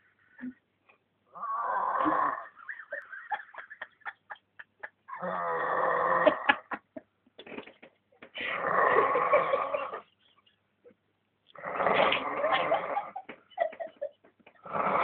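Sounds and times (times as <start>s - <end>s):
man snoring loudly: 1.4s - 2.5s, 5.1s - 6.5s, 8.5s - 9.9s, 11.6s - 13.1s, 14.6s - 15.0s.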